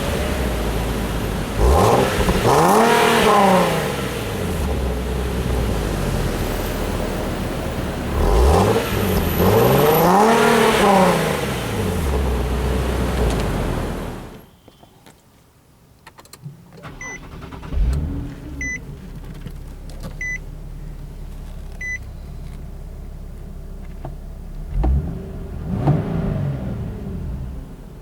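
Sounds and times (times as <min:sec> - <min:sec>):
engine revving: 0:00.0 - 0:14.4, 0:17.2 - 0:19.1, 0:24.5 - 0:27.8
car engine starting and idling: 0:00.0 - 0:14.5, 0:16.2 - 0:28.0.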